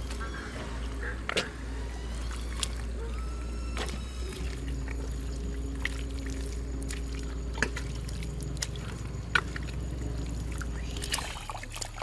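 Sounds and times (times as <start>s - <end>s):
low rumble: 0.0s - 11.7s
water sloshing and trickling: 0.0s - 12.0s
water splashes: 3.7s - 12.0s.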